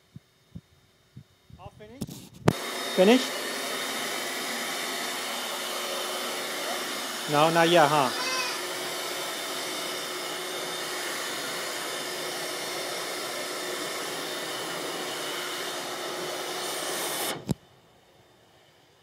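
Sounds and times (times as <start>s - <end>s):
vacuum cleaner running: 2.5s - 17.6s.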